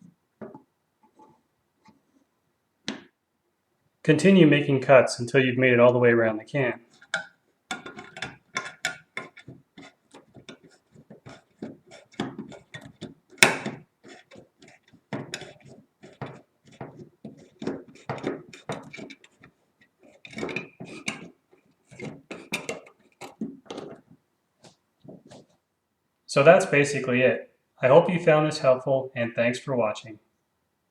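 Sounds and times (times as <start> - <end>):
can opener cutting tin lid: 6.9 - 24.0.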